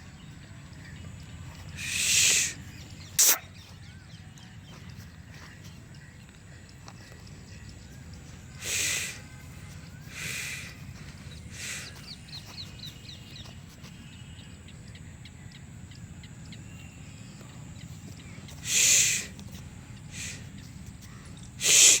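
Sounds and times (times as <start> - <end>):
faint bird chirps: 0.0 - 22.0
goat snorting: 1.8 - 3.5.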